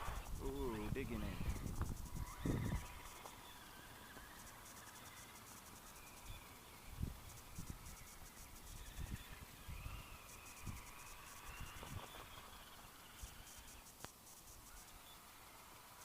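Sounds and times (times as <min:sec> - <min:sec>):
electric motor whine: 0:00.0 - 0:16.0.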